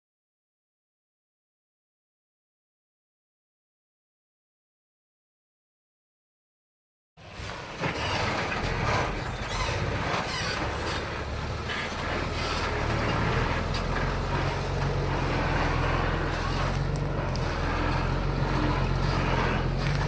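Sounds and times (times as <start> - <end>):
bulldozer diesel engine running: 7.2 - 20.0
metallic clanks and rattles: 7.4 - 20.0.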